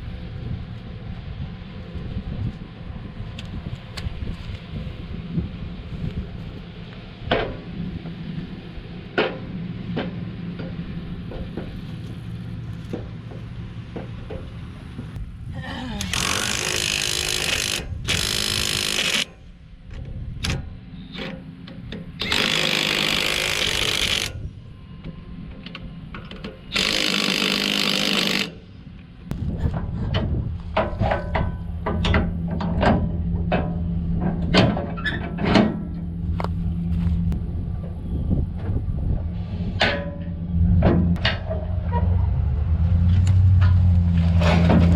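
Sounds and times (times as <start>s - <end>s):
steady low hum: 0.0s - 44.9s
impact wrench running: 16.0s - 19.4s, 22.2s - 24.3s, 26.7s - 28.6s.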